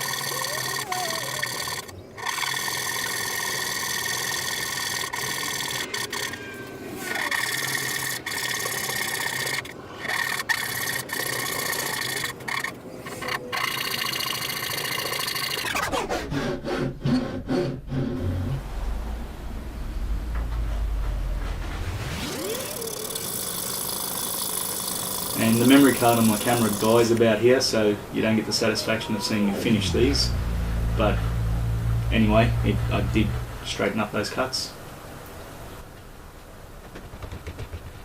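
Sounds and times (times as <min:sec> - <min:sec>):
saw cutting wood: 0:00.0 - 0:18.6, 0:21.9 - 0:27.4.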